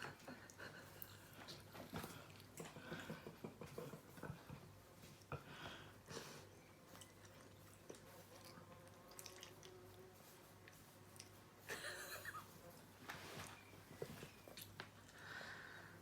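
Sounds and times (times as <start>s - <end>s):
child chewing food: 0.0s - 15.8s
rustling noise: 12.6s - 14.4s.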